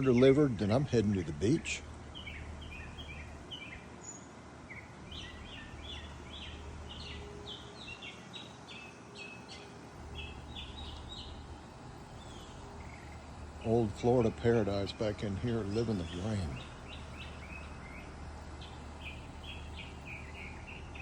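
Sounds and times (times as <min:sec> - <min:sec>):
low background hum: 0:00.0 - 0:21.0
songbirds chirping: 0:00.0 - 0:21.0.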